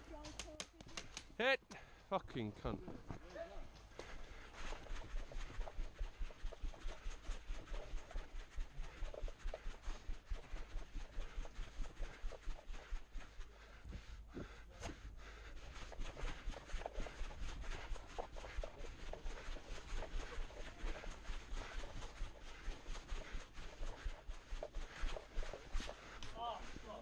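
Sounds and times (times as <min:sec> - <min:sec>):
clothing and gear rustling: 0:02.8 - 0:27.0
footsteps walking: 0:02.9 - 0:27.0.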